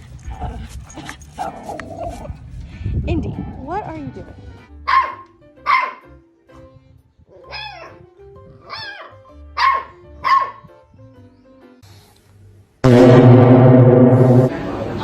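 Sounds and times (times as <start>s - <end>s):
background music: 1.5s - 15.0s
dog barking: 4.9s - 6.1s, 8.7s - 10.6s.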